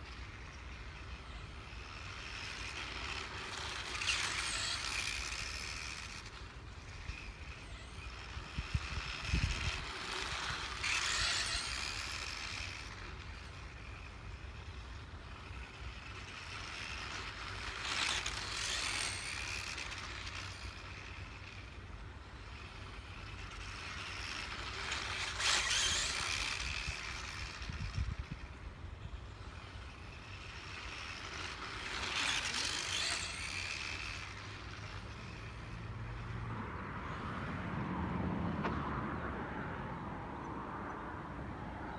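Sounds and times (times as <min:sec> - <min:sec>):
high wavering mechanical squeak: 0:07.0 - 0:13.4, 0:22.4 - 0:35.7.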